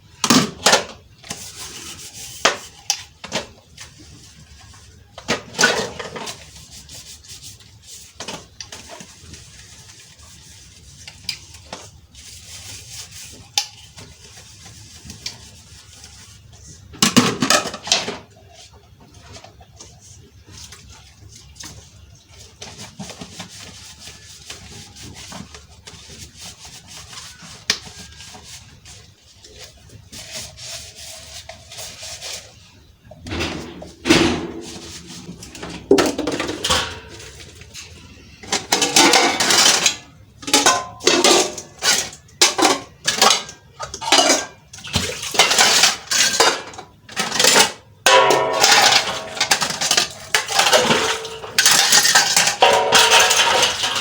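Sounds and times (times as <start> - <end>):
plates and cutlery clattering: 33.2 - 54.0.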